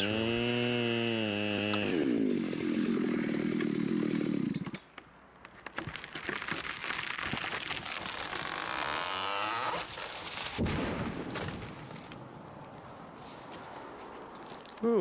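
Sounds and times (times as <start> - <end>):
chainsaw running: 0.0 - 4.7, 7.4 - 10.2
tree trunk cracking and snapping: 4.6 - 12.3, 14.4 - 14.8
heavy tree impact on ground: 5.7 - 12.5.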